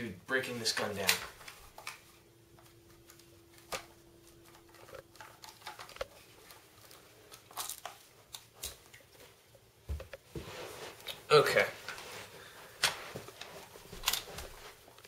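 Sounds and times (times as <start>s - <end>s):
clicks and knocks of rifle parts: 12.8s - 14.6s.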